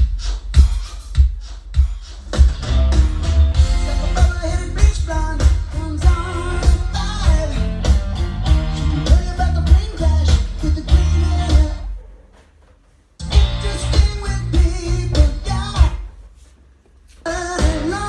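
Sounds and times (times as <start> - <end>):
song with guitar and bass beat: 2.3 - 11.9, 13.2 - 16.1, 17.3 - 18.0.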